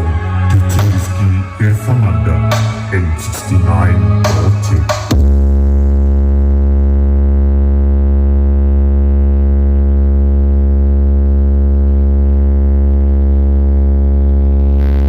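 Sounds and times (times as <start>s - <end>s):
deep bass drone: 0.0s - 15.0s.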